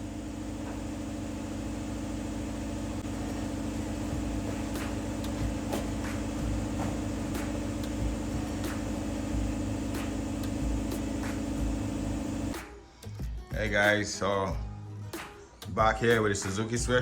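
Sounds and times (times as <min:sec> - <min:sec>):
machine humming: 0:00.0 - 0:12.6.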